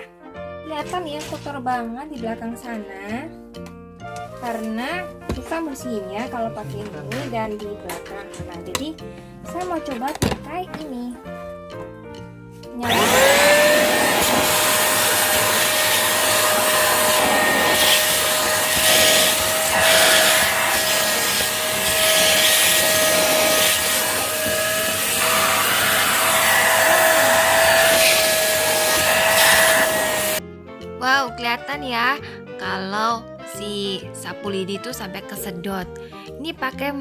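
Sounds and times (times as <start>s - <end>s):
vacuum cleaner running: 12.8s - 30.4s.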